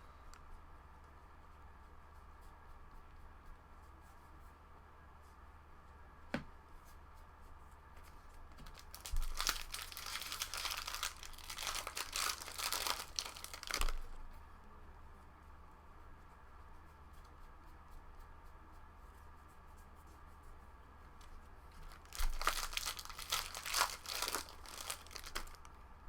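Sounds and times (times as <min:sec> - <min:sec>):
foil wrapper tearing and crinkling: 0:08.6 - 0:14.2, 0:21.7 - 0:25.7.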